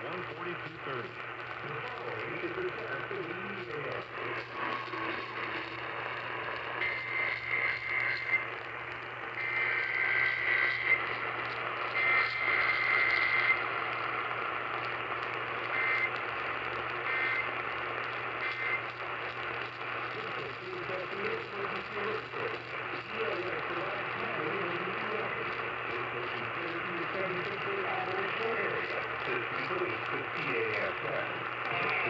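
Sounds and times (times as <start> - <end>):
radio static: 0.0 - 32.0
buzzy two-tone data bursts: 3.9 - 8.6, 9.3 - 14.2, 15.6 - 16.2, 17.0 - 17.6, 18.2 - 25.7.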